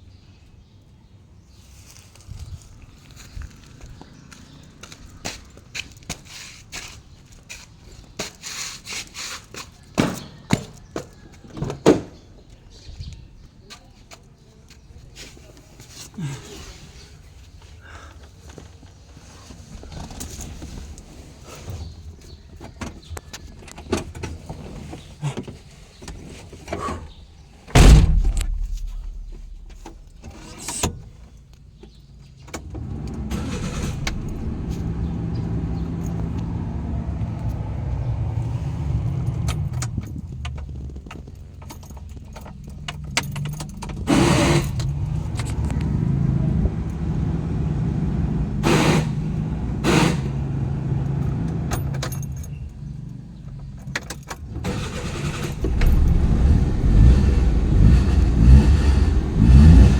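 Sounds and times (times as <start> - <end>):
loud heavy thump: 27.7 - 30.3
louder knocks or rattles: 27.8 - 30.2
engine running steadily: 32.7 - 53.6, 54.3 - 59.9
small clicks and rattles: 39.2 - 44.1.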